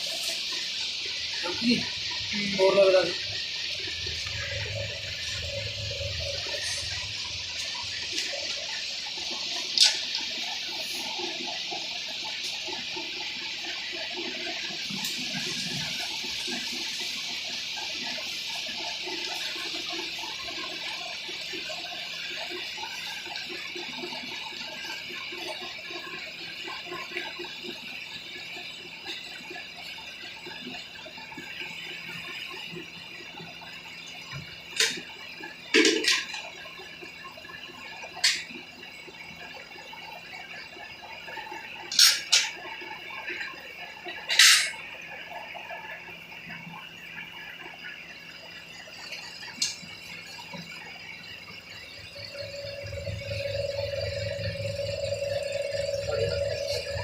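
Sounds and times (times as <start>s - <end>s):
milk streams hissing into a pail: 0.0s - 52.2s.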